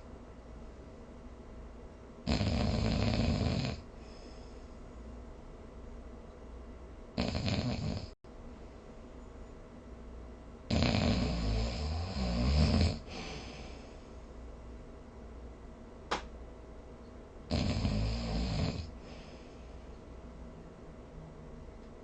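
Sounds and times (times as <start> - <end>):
person snoring: 2.3 - 4.2, 7.2 - 8.2, 10.7 - 13.8, 17.5 - 19.4.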